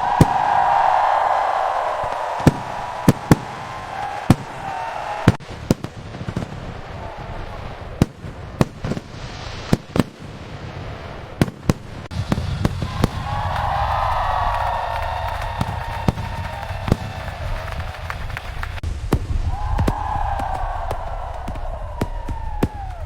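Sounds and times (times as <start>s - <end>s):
fireworks bangs: 0.0s - 23.0s.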